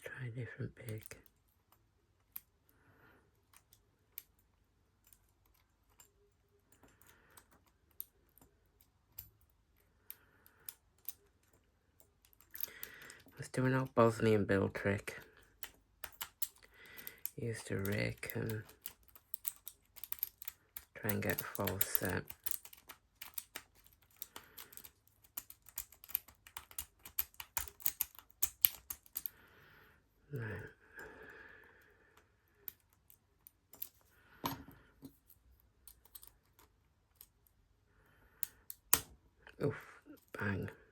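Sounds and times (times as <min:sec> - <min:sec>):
lock picks clicking and scraping: 0:00.7 - 0:29.5, 0:31.8 - 0:39.2
lock pick clicking in padlock: 0:12.2 - 0:13.3, 0:15.4 - 0:29.3, 0:38.4 - 0:39.1.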